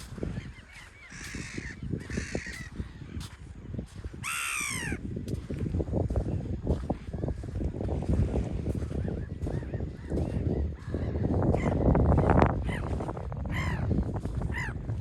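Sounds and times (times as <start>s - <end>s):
birds calling harshly: 0.0s - 3.3s, 4.2s - 5.0s, 13.5s - 13.9s
low wind rumble: 0.0s - 15.0s.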